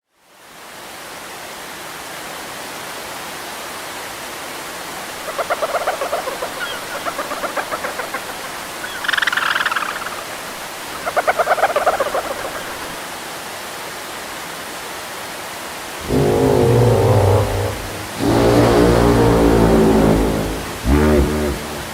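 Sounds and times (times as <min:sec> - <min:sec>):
waterfall rushing: 0:01.7 - 0:21.9
rapid pulsing creature calls: 0:05.2 - 0:13.0, 0:16.0 - 0:21.9.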